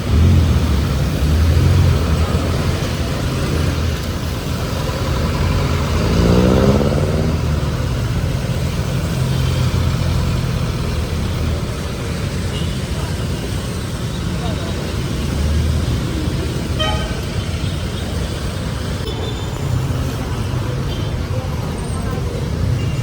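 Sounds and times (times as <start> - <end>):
vehicle accelerating: 0.0 - 17.6
vehicle engines humming: 0.0 - 23.0.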